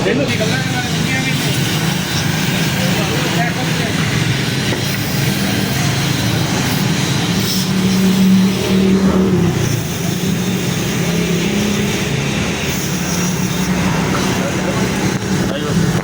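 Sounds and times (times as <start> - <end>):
car engine running: 0.0 - 16.0.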